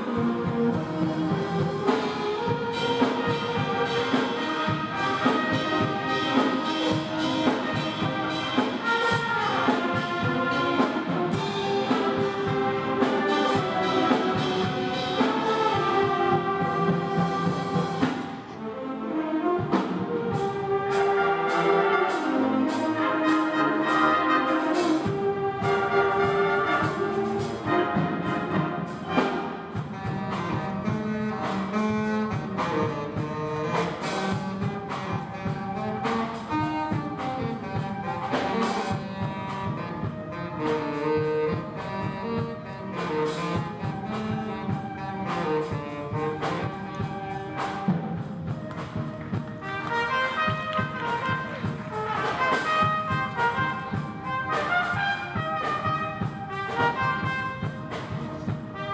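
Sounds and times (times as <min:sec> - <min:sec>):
concert band playing: 0:00.0 - 0:58.9
percussion strikes: 0:43.0 - 0:58.9.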